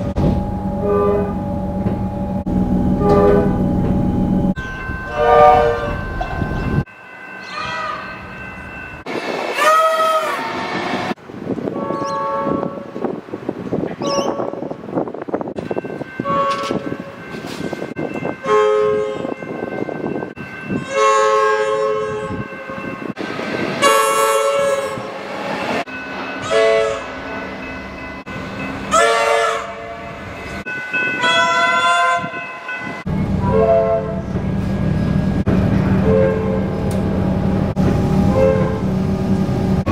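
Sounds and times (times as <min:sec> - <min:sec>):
train running rumble: 0:00.0 - 0:06.9, 0:32.2 - 0:39.9
electric train horn blasts: 0:00.1 - 0:04.5, 0:05.1 - 0:06.1, 0:11.7 - 0:13.0, 0:16.2 - 0:17.1, 0:23.8 - 0:25.1, 0:28.9 - 0:30.2, 0:31.2 - 0:32.4, 0:33.4 - 0:34.3, 0:36.0 - 0:36.8, 0:38.2 - 0:39.0.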